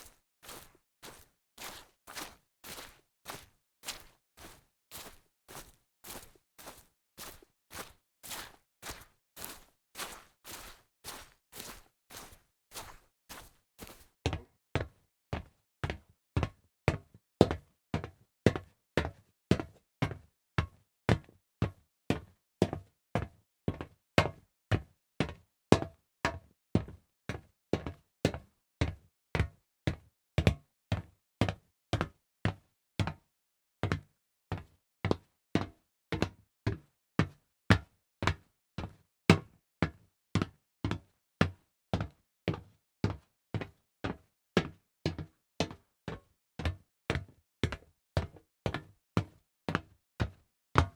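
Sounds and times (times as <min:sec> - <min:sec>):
footsteps on a hard surface: 0:00.0 - 0:14.1.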